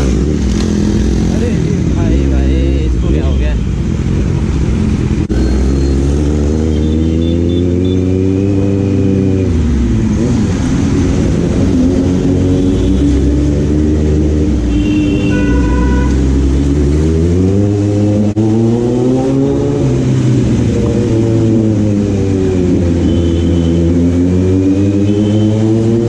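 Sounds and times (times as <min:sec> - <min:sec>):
motorcycle engine revving: 0:00.0 - 0:03.2, 0:04.0 - 0:26.0.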